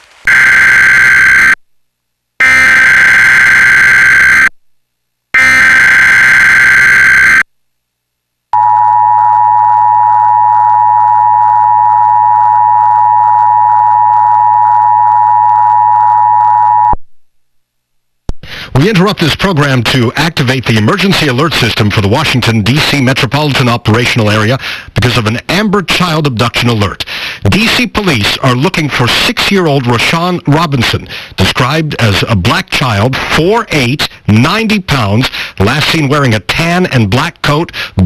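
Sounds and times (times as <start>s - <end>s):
screeching two-tone attention signal: 0.3s - 1.6s, 2.4s - 4.5s, 5.4s - 7.4s, 8.6s - 17.0s.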